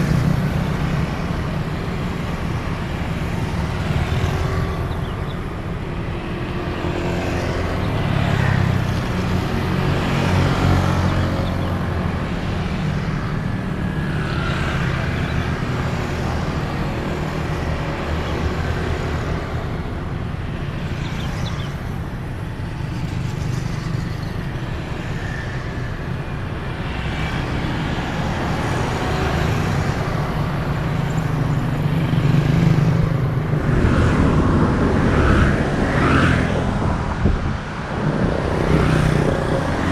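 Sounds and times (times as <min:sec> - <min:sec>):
cars and motorcycles passing: 0:00.0 - 0:39.9.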